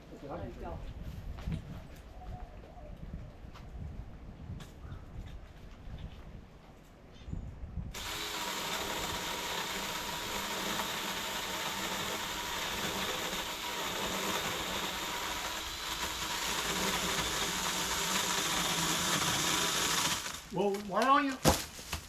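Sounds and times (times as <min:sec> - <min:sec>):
small motorized saw cutting: 0:07.9 - 0:20.5.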